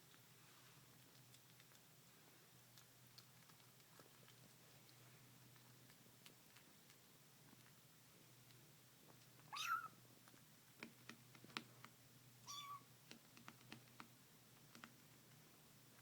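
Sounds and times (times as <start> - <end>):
chewing clicks: 0.9 - 7.8, 13.1 - 15.4
cat mewing: 9.5 - 9.9, 12.4 - 12.8.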